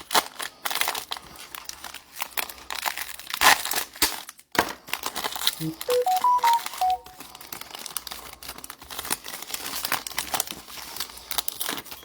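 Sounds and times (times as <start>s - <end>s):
short electronic chime: 5.6s - 7.4s.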